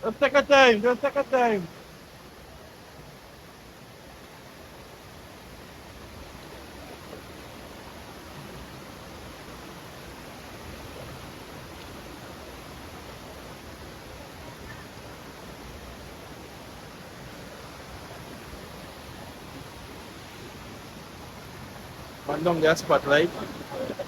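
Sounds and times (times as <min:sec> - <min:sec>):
waterfall rushing: 0:00.0 - 0:01.9, 0:13.0 - 0:24.0.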